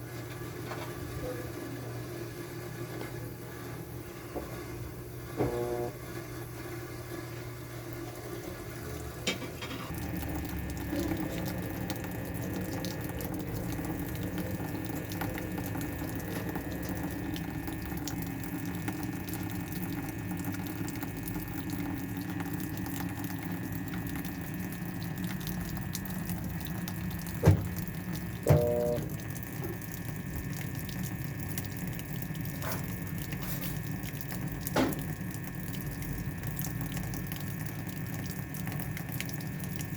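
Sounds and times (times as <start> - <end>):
water running into tub: 8.4 - 39.9
washing machine click: 27.4 - 29.2.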